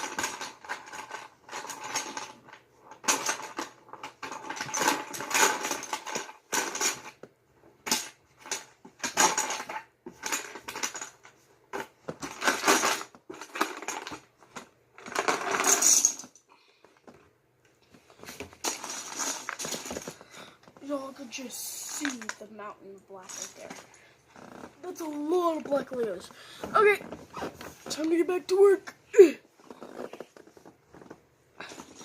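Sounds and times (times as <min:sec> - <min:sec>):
plastic bricks clattering: 0:11.8 - 0:16.4, 0:18.6 - 0:20.4.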